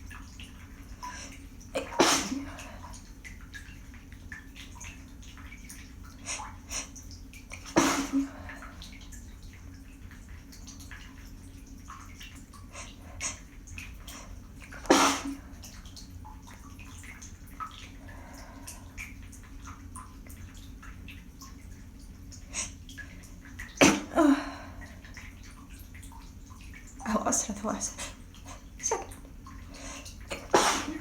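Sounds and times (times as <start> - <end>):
running water hiss: 0.0 - 11.0, 11.6 - 20.8, 21.4 - 25.5, 26.3 - 31.0
person sneezing: 1.8 - 2.6, 7.7 - 8.3, 14.8 - 15.4, 23.8 - 24.5, 30.3 - 31.0.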